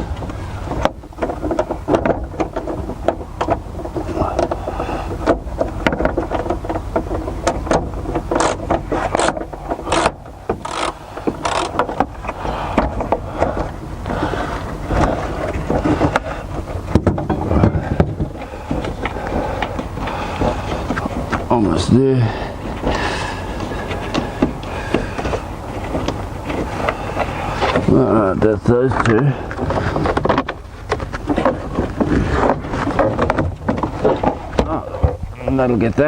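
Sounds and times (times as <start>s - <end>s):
spanner loosening a bolt: 5.2s - 12.9s.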